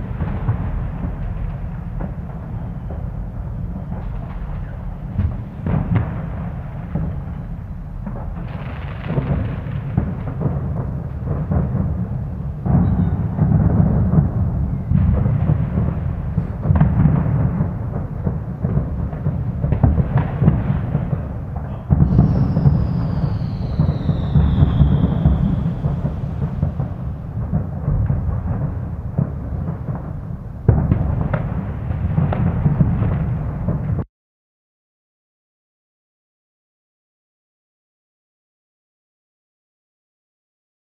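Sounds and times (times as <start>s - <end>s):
falling firework whistle: 0.0s - 11.8s, 12.6s - 17.4s, 19.8s - 30.0s
distant firework bangs: 0.0s - 34.1s
low booming: 0.0s - 34.1s.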